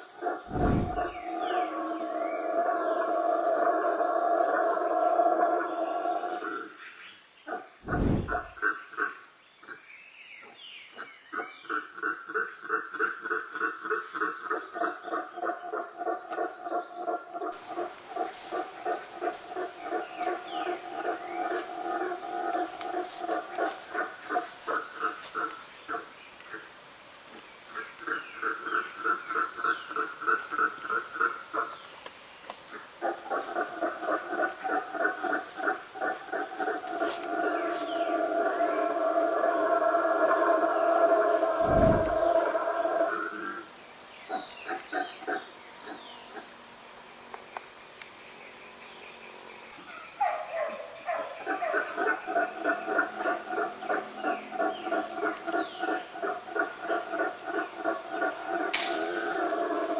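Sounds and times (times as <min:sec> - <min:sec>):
pulsed animal call: 0:00.2 - 0:06.3, 0:07.8 - 0:08.6, 0:37.5 - 0:43.6
frog croaking: 0:00.2 - 0:06.7, 0:07.5 - 0:09.1, 0:32.7 - 0:43.7, 0:51.4 - 0:59.9
lower pulsed animal call: 0:00.2 - 0:06.7, 0:07.8 - 0:08.6, 0:37.4 - 0:43.7.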